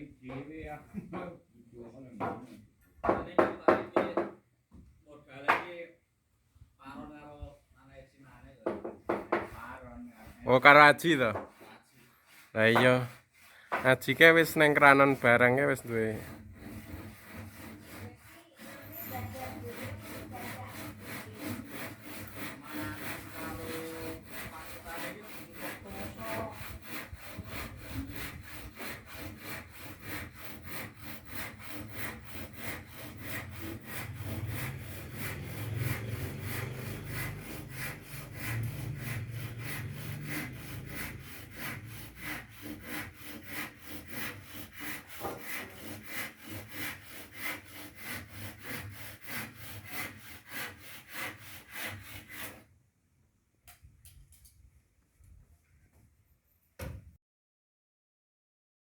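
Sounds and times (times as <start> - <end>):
hand saw cutting wood: 8.7 - 52.7.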